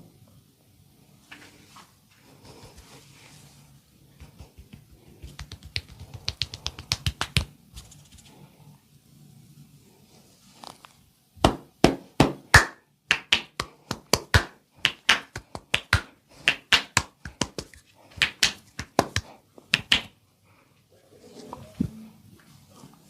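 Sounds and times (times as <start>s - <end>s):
hands slapping body: 4.2s - 7.6s, 11.4s - 20.1s.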